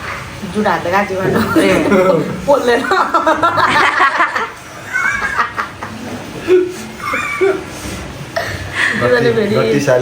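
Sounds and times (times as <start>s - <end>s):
people laughing: 1.2s - 7.8s.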